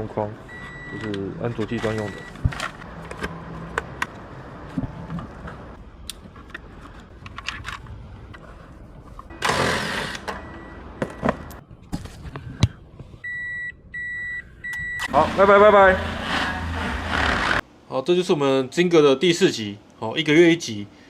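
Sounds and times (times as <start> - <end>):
car warning beeps: 0.4 - 1.2, 2.0 - 2.4, 10.3 - 11.6, 13.2 - 15.2.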